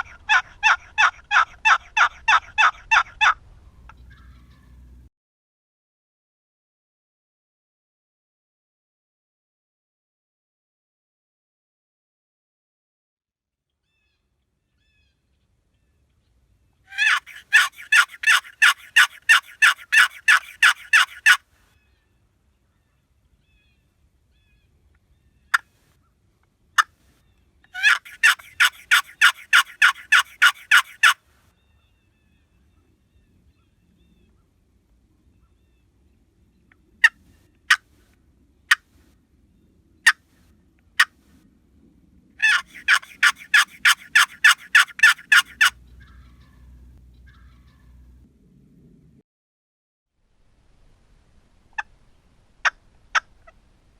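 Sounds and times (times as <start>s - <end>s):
turkey call clucks: 0.0s - 4.8s, 16.9s - 21.4s, 27.7s - 31.2s, 42.4s - 48.0s, 51.7s - 52.0s, 52.6s - 53.7s
turkey call yelps: 0.0s - 4.8s, 16.9s - 21.4s, 27.7s - 31.2s, 42.4s - 48.0s.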